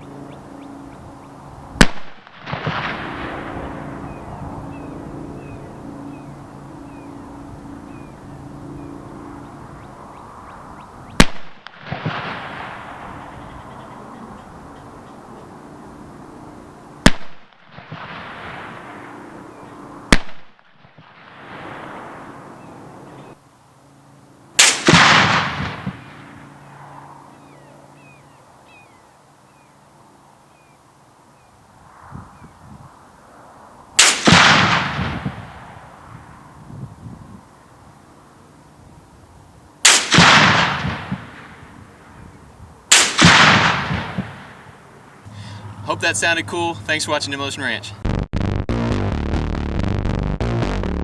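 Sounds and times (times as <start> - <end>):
birds chirping faintly: 0.0 - 1.5, 4.0 - 11.2, 13.0 - 16.8, 26.4 - 31.7
supersonic bullet crack: 1.8 - 4.2, 11.2 - 13.4, 17.0 - 19.3, 20.1 - 22.4, 24.6 - 26.4, 34.0 - 36.1, 39.8 - 41.8, 42.9 - 44.8.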